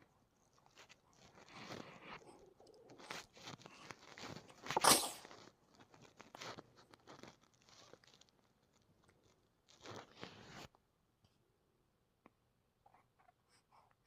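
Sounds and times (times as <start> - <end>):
crackling and rustling: 0.0 - 10.8
person sneezing: 4.7 - 5.2.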